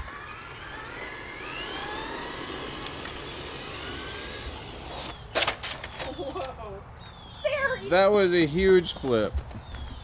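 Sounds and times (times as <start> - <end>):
electric motor whining: 0.0 - 6.2.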